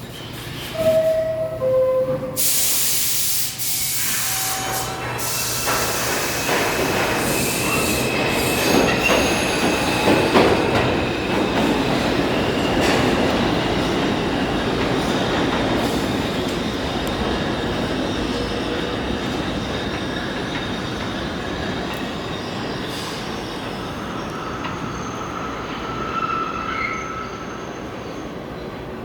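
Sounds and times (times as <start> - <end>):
train rumble: 0.0 - 26.3
high wheel squeal: 0.6 - 10.1, 22.1 - 28.2
two-note door chime: 0.8 - 2.6.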